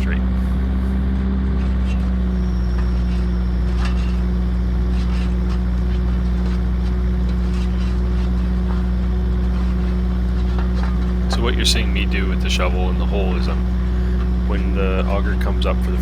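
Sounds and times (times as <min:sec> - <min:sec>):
auger engine humming: 0:00.0 - 0:16.0
faint clicks and scrapes: 0:01.4 - 0:11.6.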